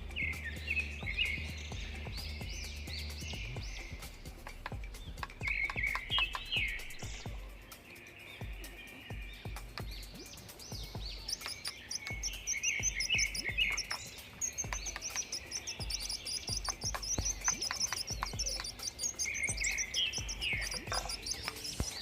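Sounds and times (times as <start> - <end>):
small birds chirping: 0.0 - 22.0
faint clicks: 11.3 - 22.0.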